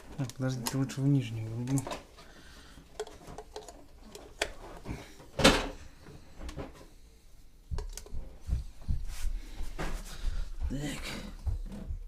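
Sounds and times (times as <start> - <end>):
parts clicking and knocking: 2.8 - 5.7.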